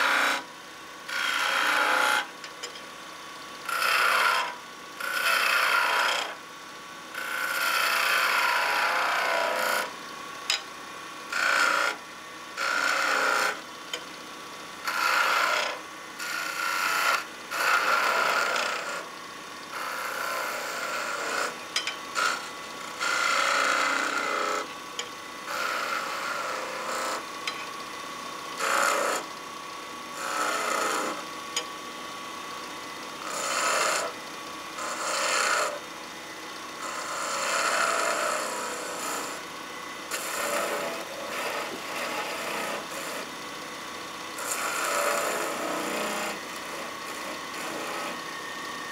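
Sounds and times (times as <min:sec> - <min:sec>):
lathe running: 0:00.0 - 0:00.4, 0:01.1 - 0:02.8, 0:03.6 - 0:06.3, 0:07.1 - 0:09.9, 0:11.3 - 0:12.0, 0:12.6 - 0:13.6, 0:14.8 - 0:31.7, 0:32.5 - 0:35.8, 0:36.7 - 0:48.9
turning tool cutting wood: 0:00.0 - 0:02.7, 0:03.6 - 0:06.4, 0:07.1 - 0:10.6, 0:11.3 - 0:14.0, 0:14.8 - 0:27.8, 0:28.5 - 0:31.7, 0:33.1 - 0:35.9, 0:36.8 - 0:39.5, 0:40.1 - 0:43.4, 0:44.4 - 0:48.9.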